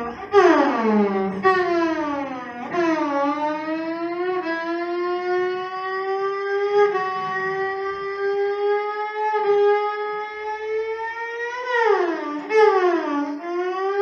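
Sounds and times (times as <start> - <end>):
bowed cello sliding in pitch: 0.0 - 14.0.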